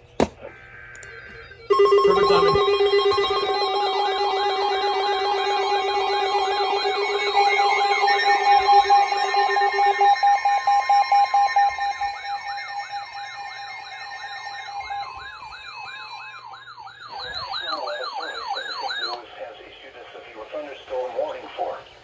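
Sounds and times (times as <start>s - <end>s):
siren-like rising warble: 0.6s - 19.2s
alert receiver tones: 1.0s - 6.7s.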